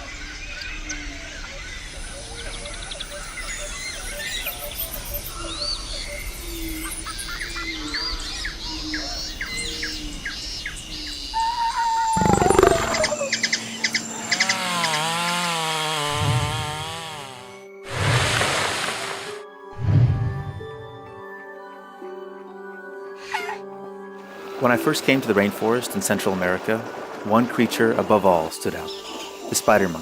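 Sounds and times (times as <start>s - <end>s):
birds chirping and whistling: 0.1s - 15.4s
wavering repeated bird call: 11.3s - 15.3s
bird call falling in pitch: 11.4s - 13.6s.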